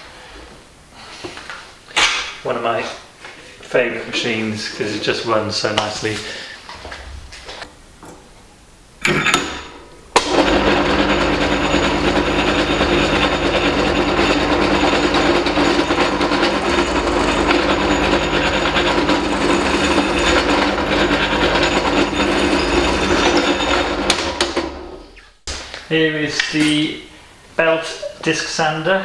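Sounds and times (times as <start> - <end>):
electric motor running: 10.2 - 25.1.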